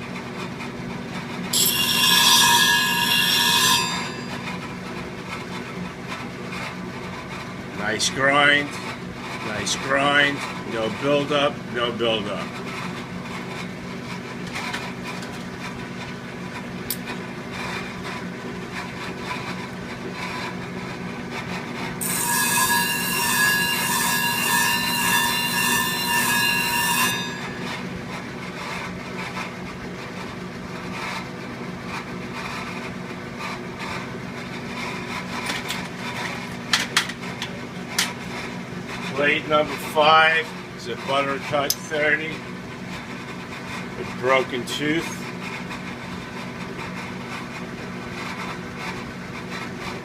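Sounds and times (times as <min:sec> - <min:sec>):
blade grinding on wheel: 0:01.4 - 0:15.8, 0:21.3 - 0:29.6.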